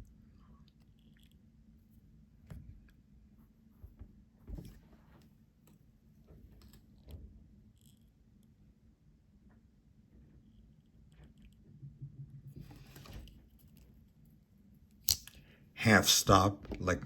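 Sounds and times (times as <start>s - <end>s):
pocket knife clicks and taps: 15.0s - 15.4s.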